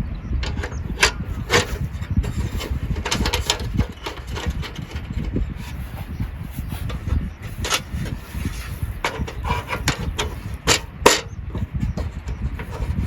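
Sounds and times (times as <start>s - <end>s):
strong wind on microphone: 0.0s - 13.0s
rustling and knocking: 0.4s - 13.0s.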